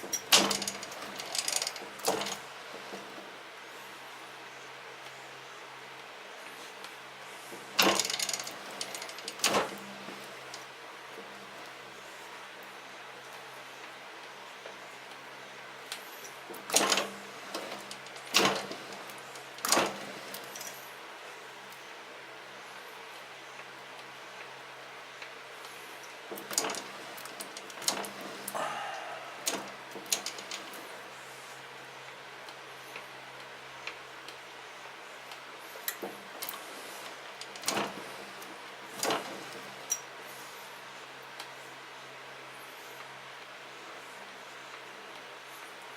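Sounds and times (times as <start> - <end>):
hand tools and metal clicking: 0.0 - 2.4, 7.8 - 10.6, 16.2 - 20.8, 26.0 - 30.9, 37.4 - 38.0, 39.0 - 40.1
steady low hum: 0.0 - 41.2.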